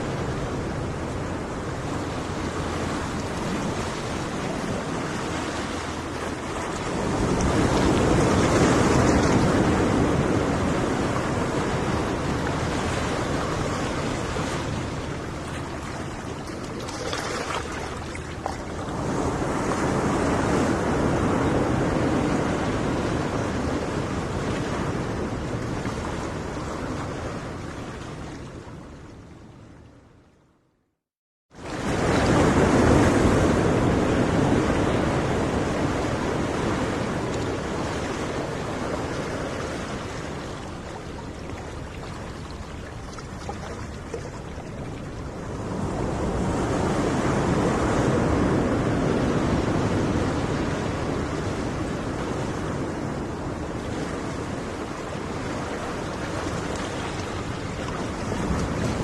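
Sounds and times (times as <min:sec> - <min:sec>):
ocean waves breaking: 0:00.0 - 0:30.1, 0:31.6 - 0:59.0.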